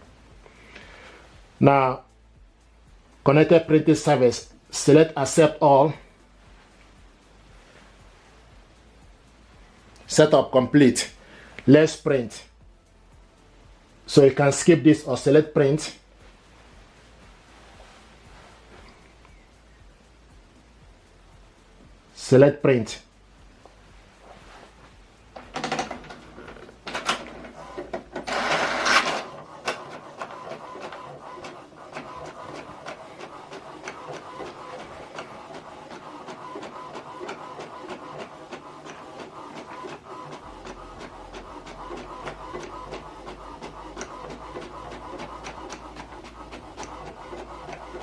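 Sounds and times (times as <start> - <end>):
inkjet printer printing: 3.3 - 6.1, 14.1 - 16.0, 24.2 - 48.0.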